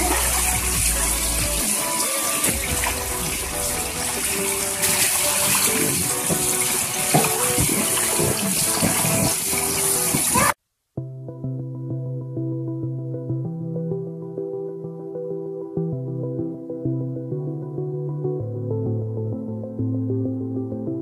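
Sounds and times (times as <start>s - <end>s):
water rushing and splashing: 0.0s - 10.6s.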